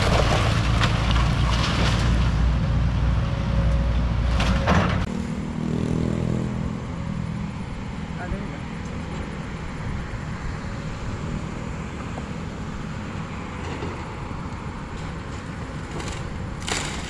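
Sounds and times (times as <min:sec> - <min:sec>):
excavator diesel engine: 0:00.0 - 0:17.0
cracking and crashing impacts: 0:15.0 - 0:17.0.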